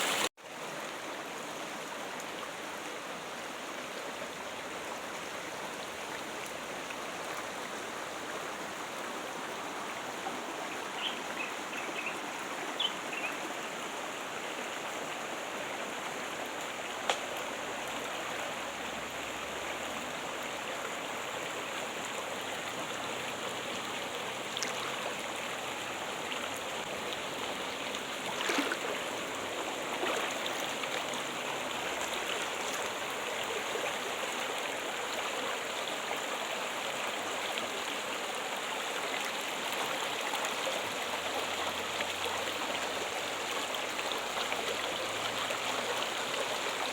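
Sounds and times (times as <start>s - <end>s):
water trickling and splashing: 0.0s - 46.9s
water drips: 26.9s - 33.0s.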